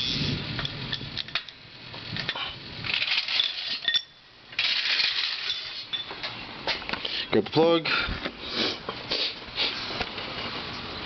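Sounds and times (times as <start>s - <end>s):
metallic clinks of tools: 3.1s - 4.2s, 5.3s - 6.4s.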